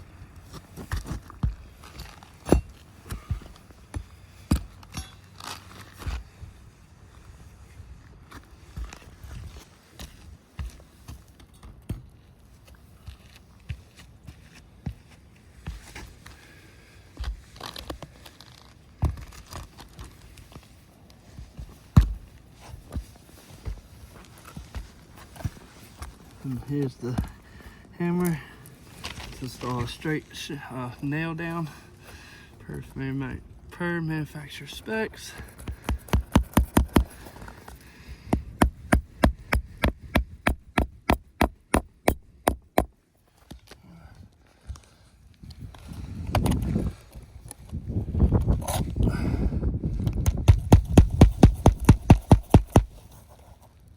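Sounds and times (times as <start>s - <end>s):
shingle tearing and crinkling: 0.4s - 6.3s, 17.3s - 27.6s
roof shingles knocking and scraping: 35.5s - 37.5s, 50.3s - 53.2s
hammer striking nail into shingles: 35.6s - 37.2s, 38.3s - 43.0s, 50.2s - 53.0s.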